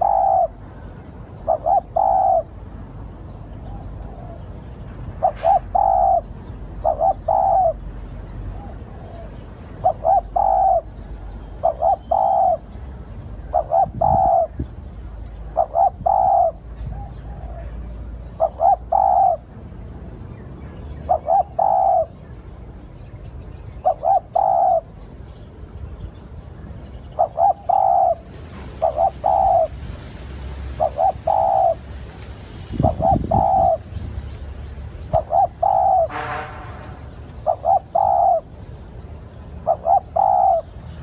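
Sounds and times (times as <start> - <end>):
dove cooing: 0.0 - 2.6, 3.6 - 7.8, 8.5 - 12.8, 13.4 - 14.8, 15.4 - 17.8, 18.4 - 19.5, 21.1 - 22.2, 23.8 - 25.0, 27.1 - 34.2, 35.0 - 36.2, 36.9 - 38.6, 39.6 - 41.0
small birds chirping: 0.0 - 41.0.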